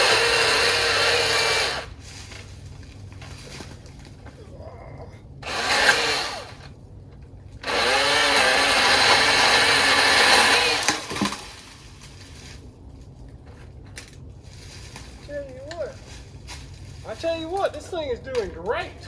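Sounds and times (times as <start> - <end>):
electric pole saw cutting wood: 0.0 - 2.0, 5.4 - 6.8, 7.6 - 11.4
saw clicks: 5.4 - 6.6.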